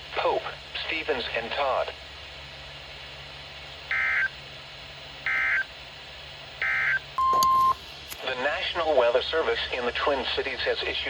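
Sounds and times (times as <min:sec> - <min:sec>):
faint radio hiss: 0:00.0 - 0:03.8, 0:07.8 - 0:11.0.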